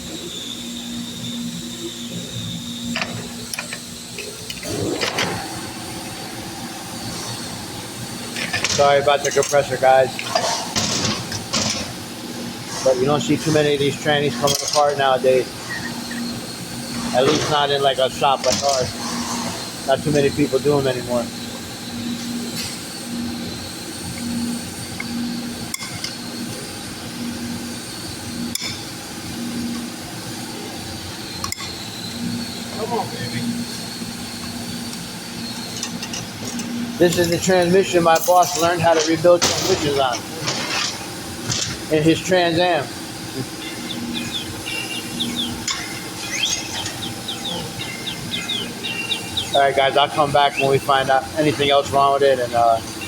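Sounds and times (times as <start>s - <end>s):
air compressor humming: 0.0s - 53.0s
metal parts clinking: 14.5s - 14.9s
bird chirping: 43.6s - 49.8s.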